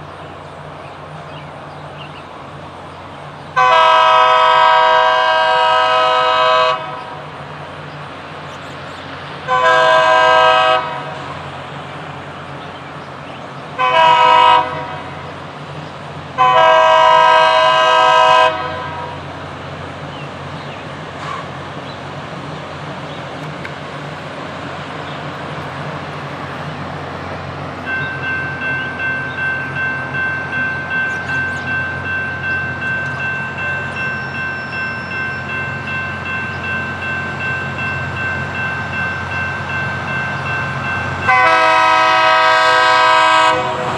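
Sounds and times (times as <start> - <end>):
train engines rumbling: 0.0 - 43.9
locomotive horn blasts: 3.6 - 7.2, 9.5 - 11.2, 13.8 - 15.2, 16.4 - 19.2, 41.2 - 43.9.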